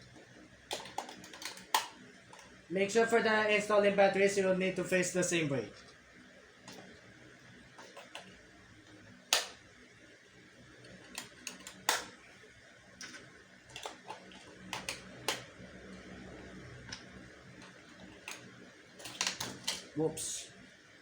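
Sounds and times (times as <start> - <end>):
batteries clicking into plastic tray: 0.7 - 1.9, 11.1 - 12.1.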